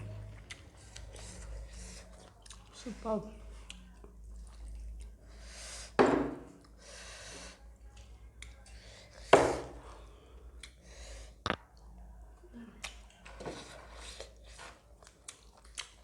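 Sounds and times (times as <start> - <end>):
eating noises: 0.0 - 5.4, 12.7 - 16.0.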